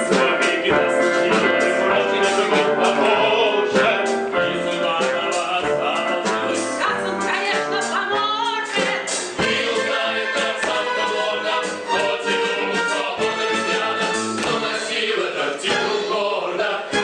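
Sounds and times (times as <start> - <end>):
person singing: 0.0 - 7.6
orchestra playing: 0.0 - 8.0, 9.3 - 15.1.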